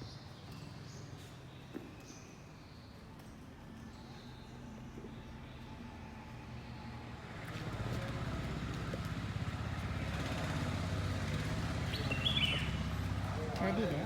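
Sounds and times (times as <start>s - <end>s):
engine running: 6.9s - 14.0s.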